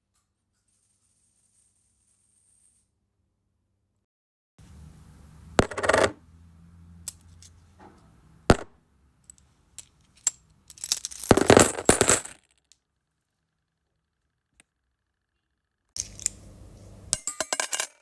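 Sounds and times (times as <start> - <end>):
coins dropping on hard surface: 5.6 - 6.2, 9.3 - 12.8, 16.0 - 18.0.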